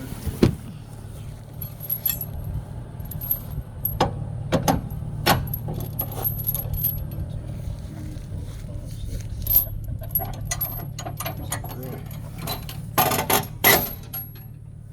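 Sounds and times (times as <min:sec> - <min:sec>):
steady low hum: 0:00.0 - 0:14.9
metal chain clinking and rattling: 0:01.6 - 0:07.6, 0:09.2 - 0:14.6.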